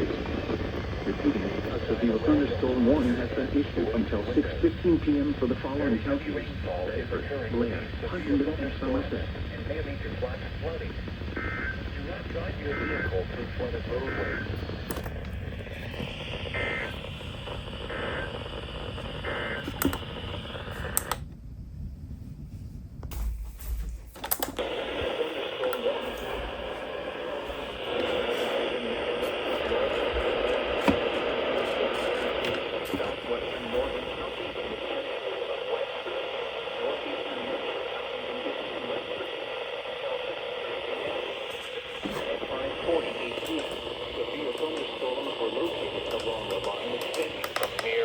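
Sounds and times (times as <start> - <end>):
radio receiver hiss: 0.0 - 21.4, 23.0 - 48.0
two-tone data bursts: 11.3 - 14.8, 16.1 - 20.9.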